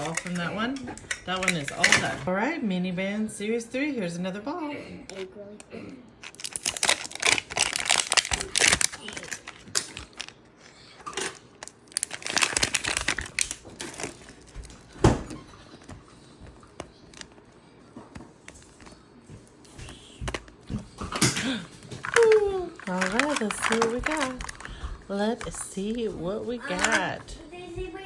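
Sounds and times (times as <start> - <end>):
plastic wrapping crinkling and tearing: 6.1 - 17.6, 21.2 - 27.3.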